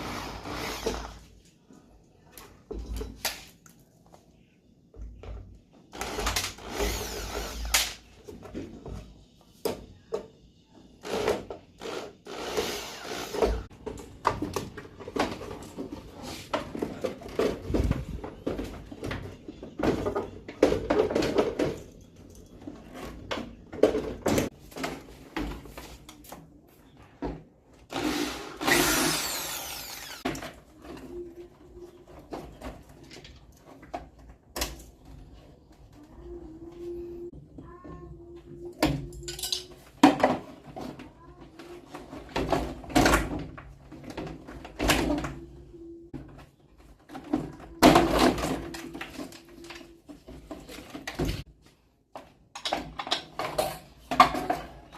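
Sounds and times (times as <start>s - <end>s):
power drill running: 6.0s - 7.7s, 11.8s - 13.6s, 27.9s - 30.2s.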